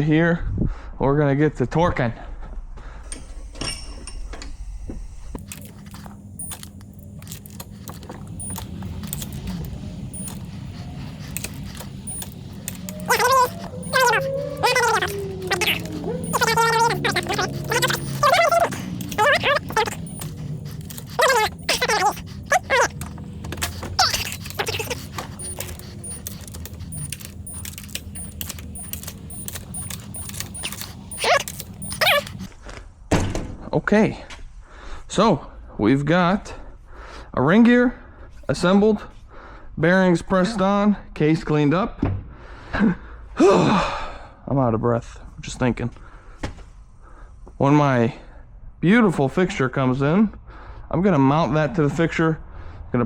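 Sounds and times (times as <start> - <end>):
steady low hum: 3.1 - 32.5
wrench and bolts clicking: 5.4 - 32.5
short wavering squeak: 6.4 - 32.5.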